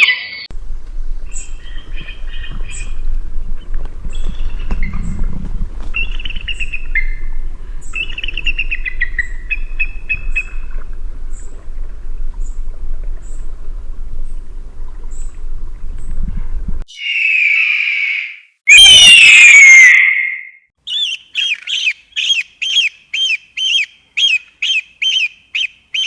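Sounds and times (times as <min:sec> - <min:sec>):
low rumble: 0:00.6 - 0:07.9
eagle chittering calls: 0:16.9 - 0:18.4, 0:20.9 - 0:26.0.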